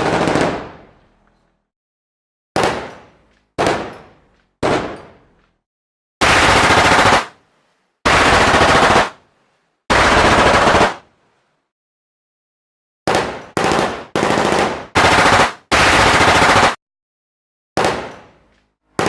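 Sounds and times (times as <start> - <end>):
machine gun fire: 0.0 - 0.8, 6.2 - 7.3, 8.1 - 9.2, 9.9 - 11.0, 13.1 - 16.8.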